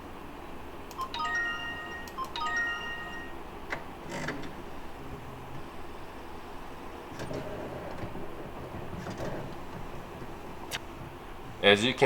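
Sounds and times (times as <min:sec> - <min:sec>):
electronic chime jingle: 0:01.0 - 0:03.4.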